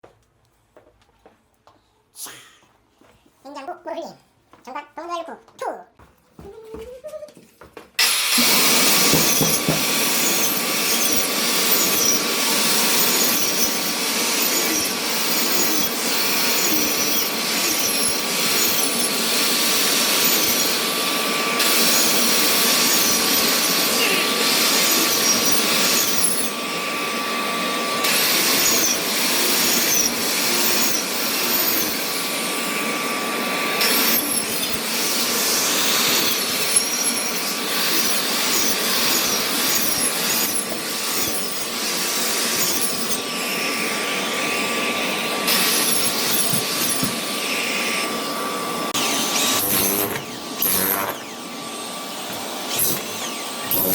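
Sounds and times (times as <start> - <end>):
power tool cutting wood: 8.0 - 53.9.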